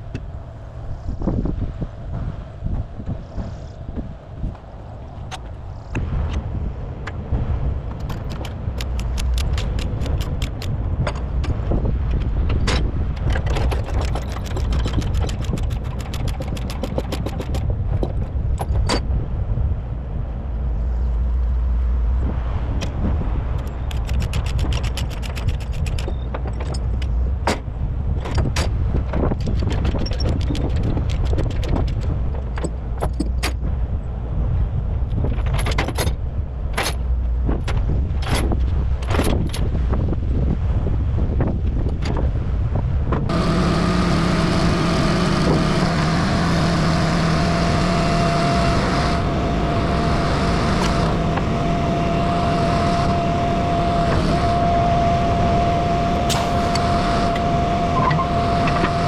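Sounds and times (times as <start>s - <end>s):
engine idling: 56.2s - 59.0s.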